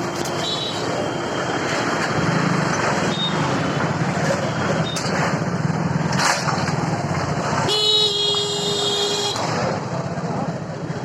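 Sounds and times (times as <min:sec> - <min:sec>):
heavy diesel engine running: 0:00.0 - 0:06.9
road traffic noise: 0:00.0 - 0:11.0.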